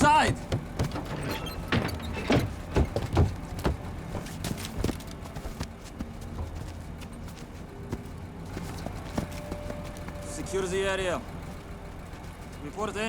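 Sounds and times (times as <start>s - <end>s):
knocks and thuds of boots and gear: 0.0s - 10.5s
vehicle engine idling: 0.0s - 13.0s.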